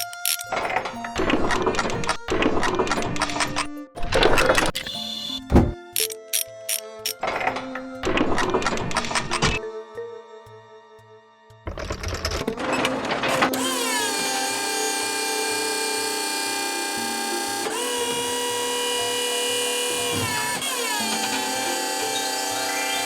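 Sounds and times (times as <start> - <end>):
faint background music beat: 0.0 - 23.0
power tool motor whine: 12.6 - 23.0.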